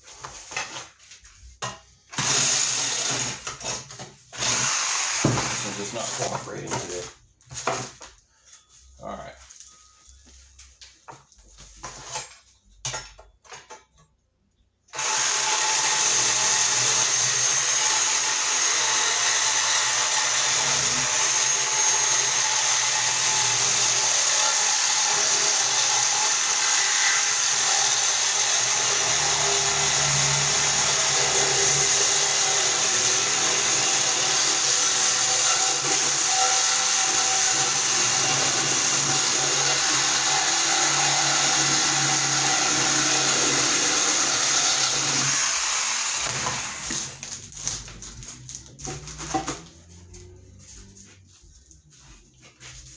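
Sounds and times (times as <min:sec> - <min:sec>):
reciprocating saw cutting metal: 0:04.4 - 0:07.0, 0:15.0 - 0:47.2.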